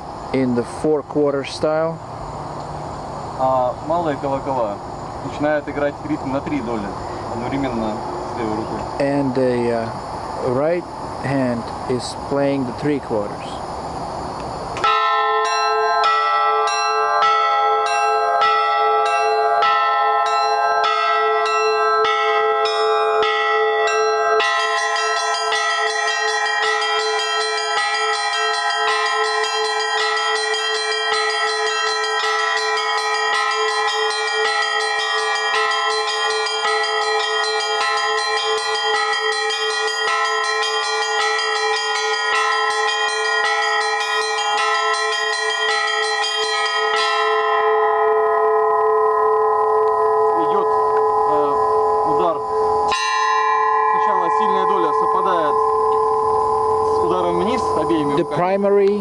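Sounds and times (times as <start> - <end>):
church bells ringing: 3.4 - 13.3, 14.8 - 59.0
small bells ringing: 3.4 - 13.6, 14.8 - 59.0.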